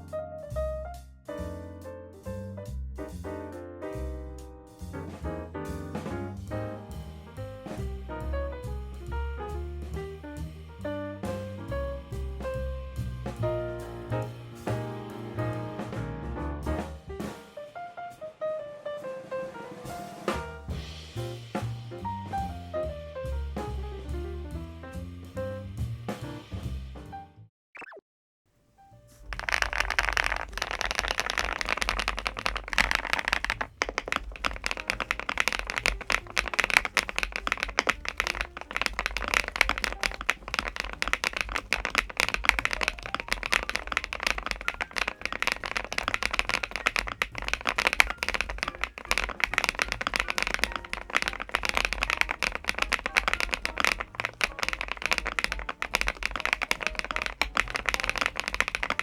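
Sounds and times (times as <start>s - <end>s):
mechanical keyboard typing: 29.2s - 59.0s.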